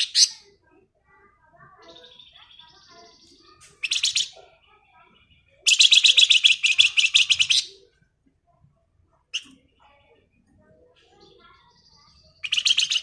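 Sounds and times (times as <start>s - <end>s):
bird chirp: 0.0s - 8.0s, 9.1s - 13.0s
songbird rapid high trill: 5.7s - 7.7s.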